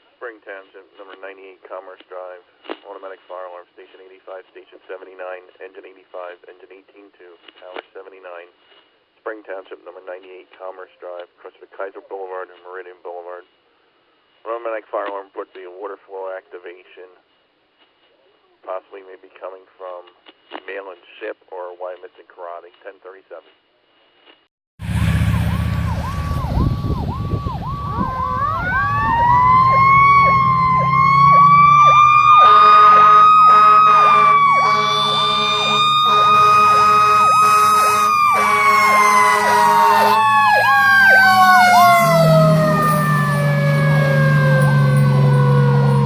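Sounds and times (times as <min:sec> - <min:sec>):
fire engine horn blasts: 0:24.8 - 0:46.0
siren wailing: 0:24.8 - 0:46.0
truck engine rumble: 0:24.8 - 0:46.0
siren yelping: 0:24.9 - 0:46.0.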